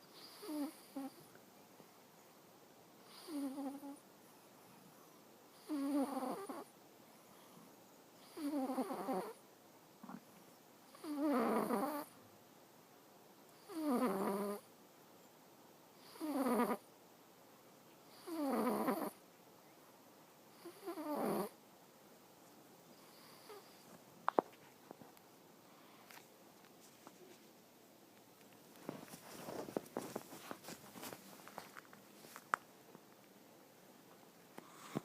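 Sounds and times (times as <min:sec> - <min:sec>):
cat snoring: 0:00.1 - 0:01.3, 0:03.0 - 0:04.0, 0:05.5 - 0:06.7, 0:08.2 - 0:09.4, 0:10.9 - 0:12.1, 0:13.6 - 0:14.6, 0:16.0 - 0:16.9, 0:18.1 - 0:19.2, 0:20.5 - 0:21.6, 0:23.0 - 0:23.8.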